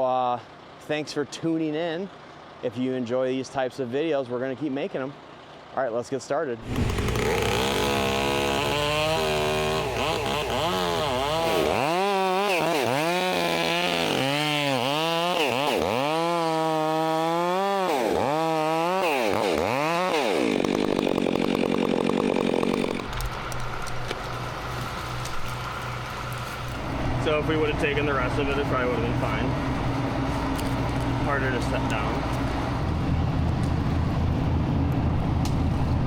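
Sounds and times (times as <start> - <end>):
chainsaw engine revving: 6.6 - 23.2.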